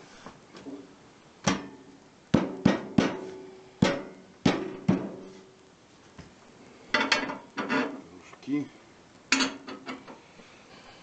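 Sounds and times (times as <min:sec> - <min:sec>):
metal stove plates clanking: 0:06.9 - 0:08.0, 0:09.3 - 0:10.2.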